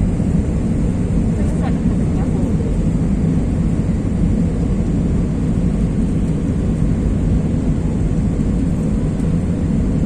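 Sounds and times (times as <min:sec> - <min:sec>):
airliner cabin engine rumble: 0:00.0 - 0:10.0.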